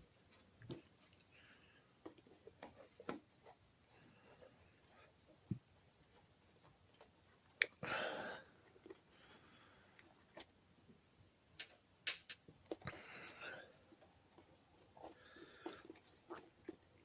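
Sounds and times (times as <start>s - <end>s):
faint clicks of small parts: 11.6s - 17.0s.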